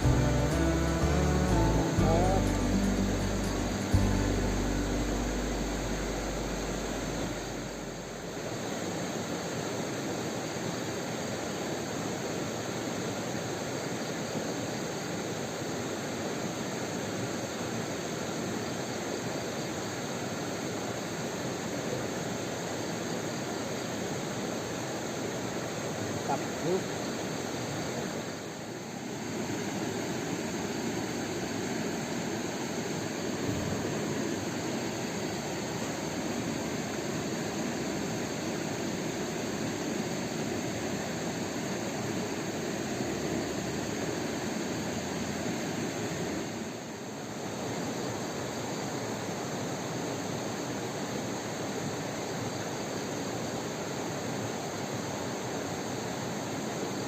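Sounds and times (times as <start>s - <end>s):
river water rushing: 0.0s - 13.6s.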